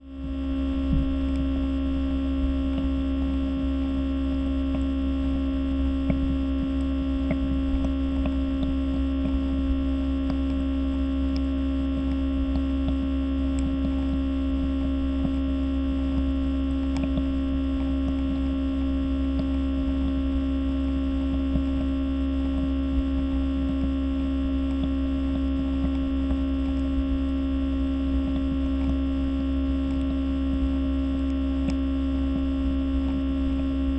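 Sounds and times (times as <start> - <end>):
diffuser humming: 0.0 - 33.9
faint ticks: 0.6 - 33.8.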